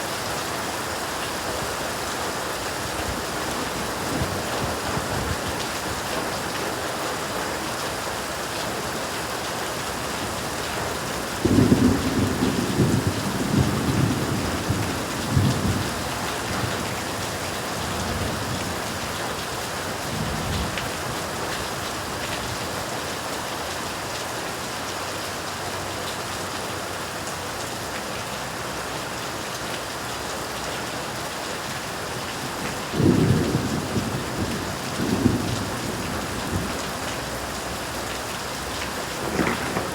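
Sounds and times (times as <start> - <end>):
heavy rain hissing: 0.0 - 39.9
thunder rumbling: 11.4 - 19.2, 32.8 - 37.8, 38.7 - 39.9.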